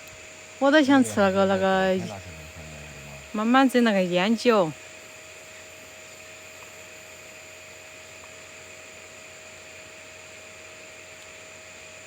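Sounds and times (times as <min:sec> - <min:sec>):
faint constant whine: 0:00.0 - 0:11.5
electrical hum: 0:00.6 - 0:04.8.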